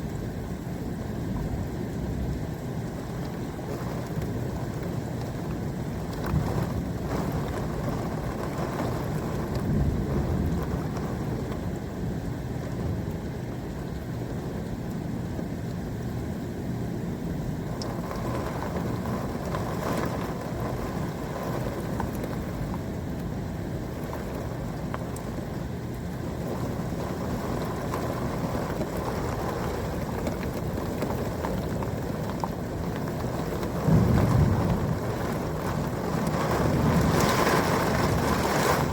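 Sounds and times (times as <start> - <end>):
steady rain falling: 0.0 - 38.9
thunder rumbling: 5.7 - 14.4, 26.2 - 38.9.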